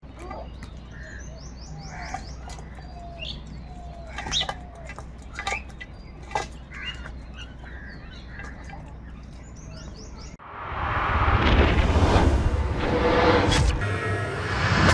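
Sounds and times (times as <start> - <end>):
small birds chirping: 0.0 - 10.4
crows cawing: 0.9 - 2.8, 6.7 - 8.8
loud whoosh: 10.4 - 14.9.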